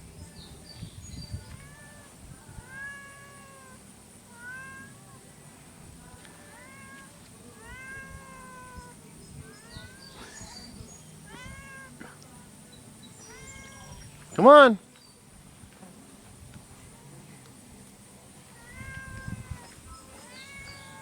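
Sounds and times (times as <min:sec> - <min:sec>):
cat meowing: 0:01.4 - 0:05.1, 0:06.4 - 0:12.0, 0:13.2 - 0:14.1, 0:18.5 - 0:21.0.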